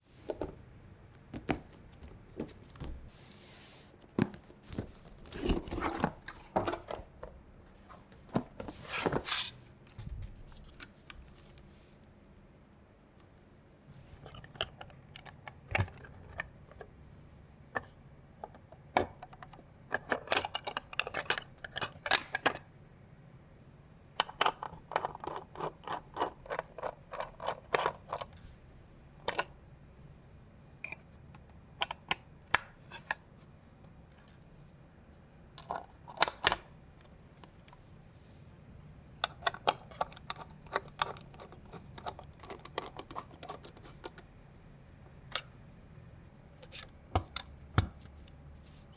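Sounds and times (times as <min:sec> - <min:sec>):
hands handling computer parts: 0:00.1 - 0:12.2.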